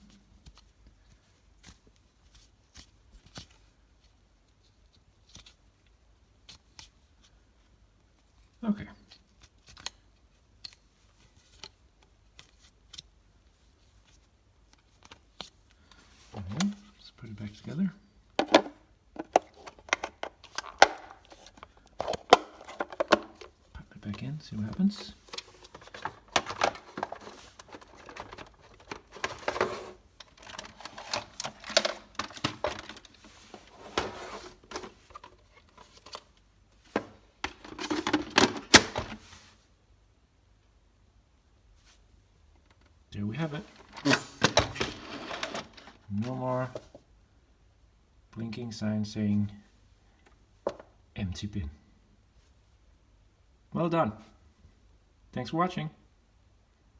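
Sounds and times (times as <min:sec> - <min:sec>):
plastic clicks and rattles: 0:18.4 - 0:24.2, 0:25.2 - 0:33.3, 0:34.0 - 0:39.2.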